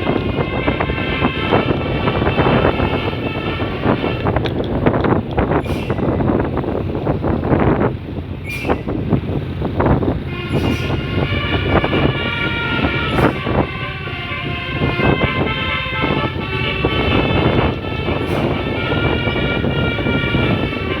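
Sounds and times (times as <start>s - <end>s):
musical air horn playing a tune: 0.0s - 4.4s, 10.3s - 21.0s
road noise: 0.0s - 21.0s
truck engine: 0.0s - 21.0s.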